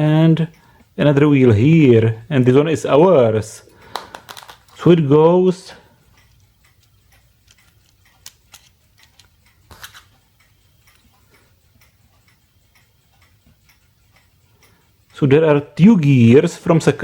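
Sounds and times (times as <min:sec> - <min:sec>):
plastic clock gears clicking: 0:06.2 - 0:10.2.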